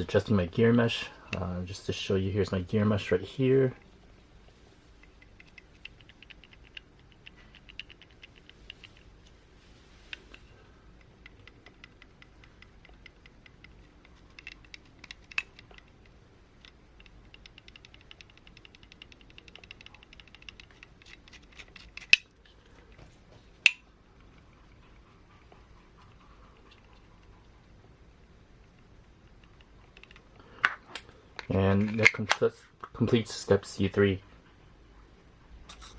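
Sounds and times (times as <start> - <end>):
gear teeth ticking: 11.0 - 22.2
sharp clicks: 11.0 - 22.3.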